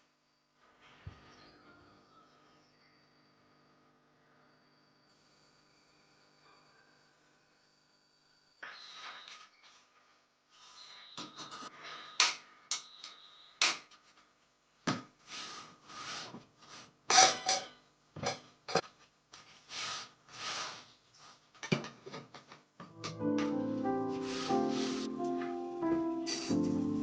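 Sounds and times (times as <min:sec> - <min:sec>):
hands rubbing and swishing: 0:23.4 - 0:27.0.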